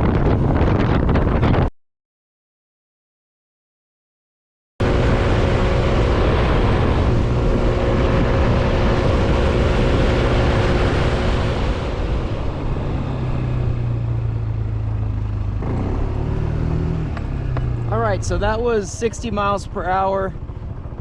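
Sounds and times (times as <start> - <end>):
wind rushing over microphone: 0.0 - 1.7, 4.8 - 21.0
scooter engine droning: 4.8 - 21.0.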